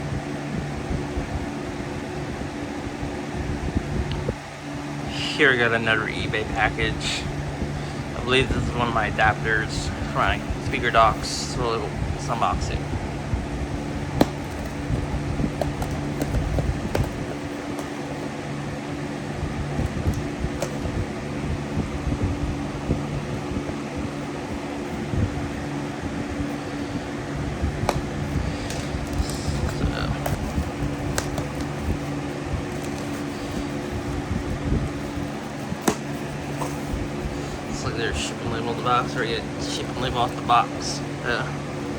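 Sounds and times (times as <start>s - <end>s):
fan hum: 0.0s - 41.9s
low handling rumble: 0.1s - 41.9s
package clicks and taps: 14.2s - 15.0s, 15.6s - 18.1s, 19.8s - 20.9s, 27.8s - 32.0s, 32.7s - 33.2s, 35.8s - 36.8s.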